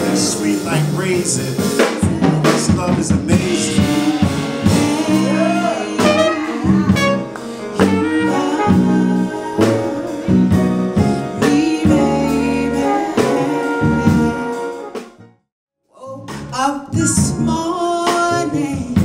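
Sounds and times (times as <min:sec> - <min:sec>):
person singing: 0:00.0 - 0:14.9
live jazz-soul band: 0:00.0 - 0:15.3, 0:16.1 - 0:19.0
drum hits: 0:00.8 - 0:09.0.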